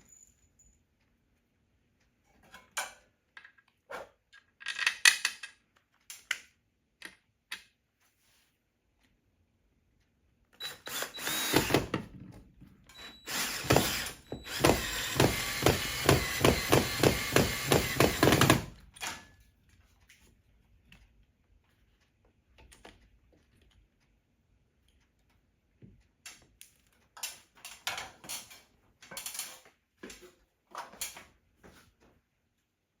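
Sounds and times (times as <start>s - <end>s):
power drill pulsing: 10.6s - 12.0s, 13.0s - 18.8s.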